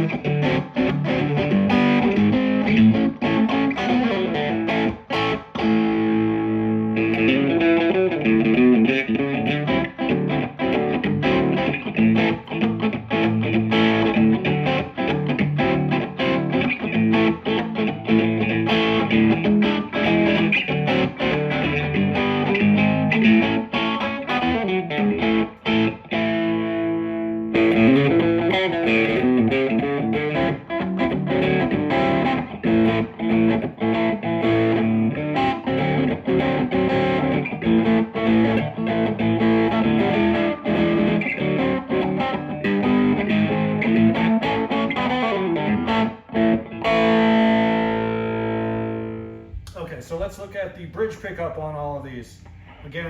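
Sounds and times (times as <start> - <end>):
overdriven electric guitar: 0.0 - 49.6.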